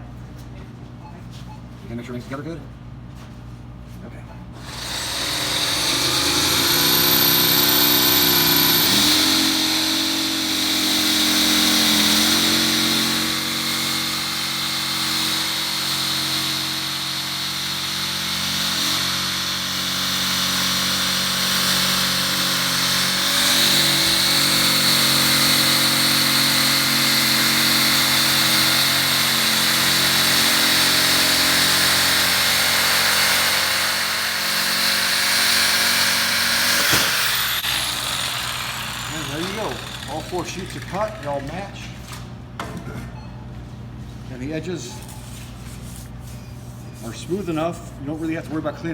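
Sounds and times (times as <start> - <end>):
power saw cutting plexiglass: 4.6 - 41.9.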